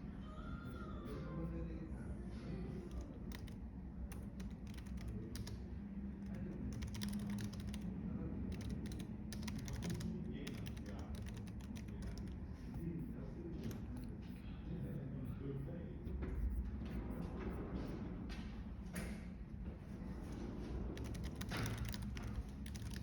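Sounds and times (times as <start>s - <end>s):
typing on computer keyboard: 2.8s - 12.4s, 20.9s - 23.0s.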